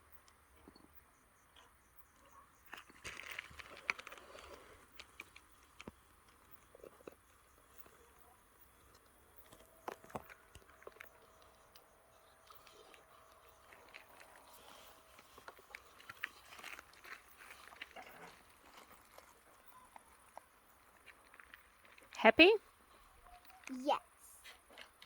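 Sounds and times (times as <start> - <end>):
chewing tomatoes: 2.7 - 22.2.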